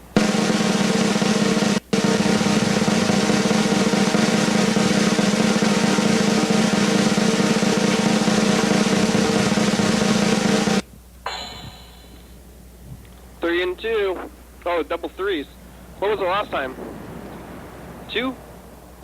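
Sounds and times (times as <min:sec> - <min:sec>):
snare drum roll: 0:00.0 - 0:12.4.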